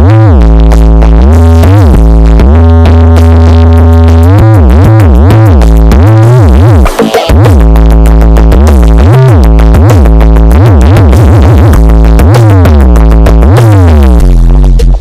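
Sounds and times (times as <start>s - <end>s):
electronic beat: 0.0s - 15.0s
heavy synth bass sliding in pitch: 0.0s - 15.0s.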